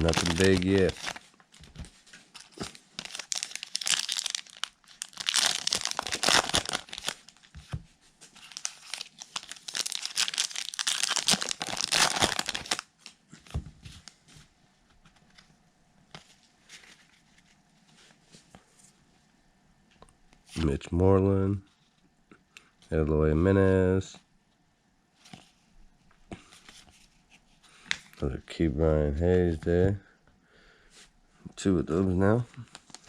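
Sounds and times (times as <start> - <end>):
plastic wrapping tearing and crinkling: 0.0 - 7.5, 8.4 - 13.2.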